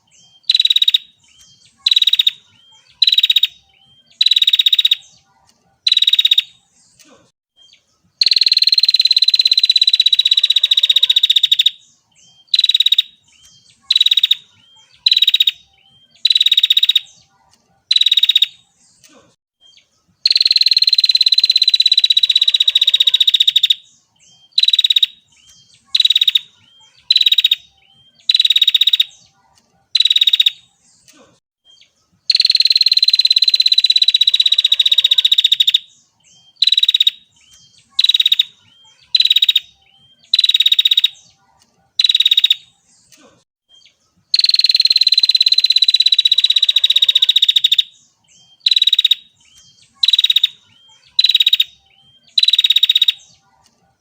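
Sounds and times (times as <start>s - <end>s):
bird buzzy trilled calls: 0.0s - 5.2s, 7.6s - 17.2s, 20.2s - 29.3s, 32.2s - 41.4s, 43.9s - 53.4s.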